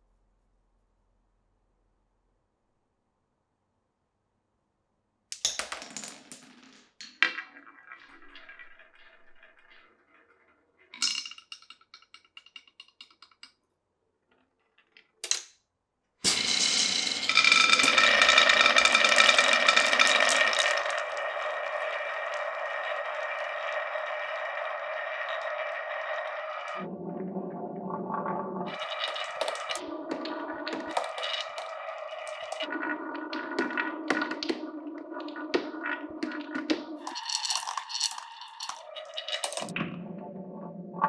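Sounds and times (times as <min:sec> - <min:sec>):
marbles clacking on wooden run: 0:05.4 - 0:10.2, 0:10.9 - 0:13.6, 0:16.3 - 0:26.9, 0:28.7 - 0:39.7.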